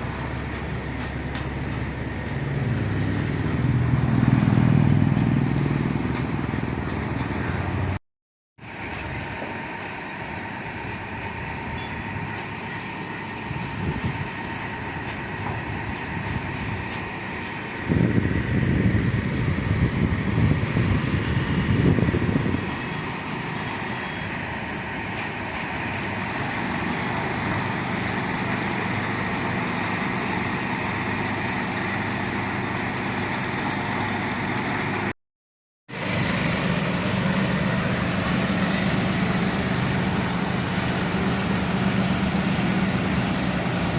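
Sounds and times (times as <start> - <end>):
construction machinery engines running: 0.0 - 8.0, 8.6 - 35.2, 35.9 - 43.9.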